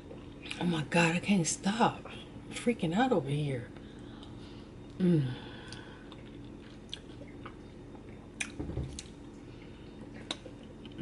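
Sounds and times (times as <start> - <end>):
person chewing and smacking: 5.6 - 11.0.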